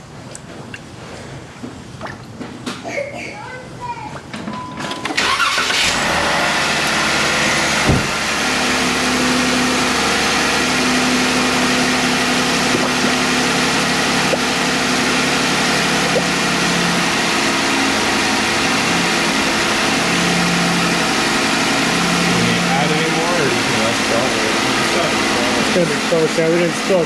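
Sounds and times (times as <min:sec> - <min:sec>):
car engine idling: 0:05.2 - 0:27.0
short thump: 0:07.8 - 0:08.2.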